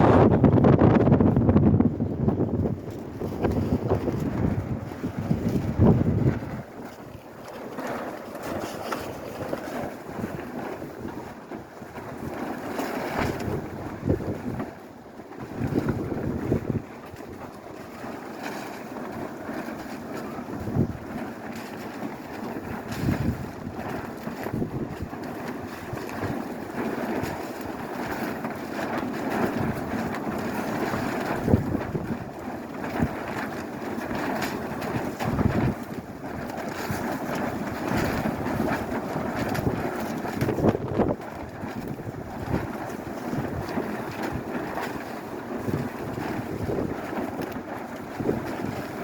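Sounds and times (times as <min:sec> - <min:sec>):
strong blizzard wind: 0:00.0 - 0:06.8
plastic tarps flapping and rustling: 0:00.0 - 0:49.0
wind buffeting the microphone: 0:00.0 - 0:49.0.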